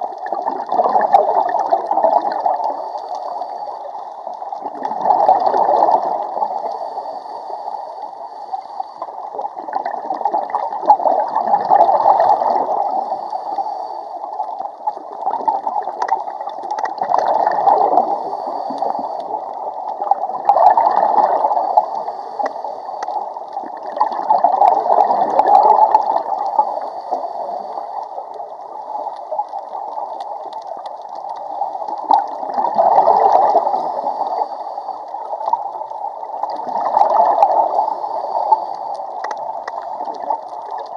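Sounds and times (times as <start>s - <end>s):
bubbles gurgling underwater: 0.0s - 3.4s, 4.2s - 6.8s, 9.0s - 13.3s, 14.3s - 40.9s
diver breathing through regulator: 2.4s - 4.2s, 5.7s - 9.3s, 11.8s - 14.6s, 17.2s - 20.2s, 21.0s - 23.6s, 24.4s - 30.6s, 33.1s - 35.7s, 36.4s - 40.6s.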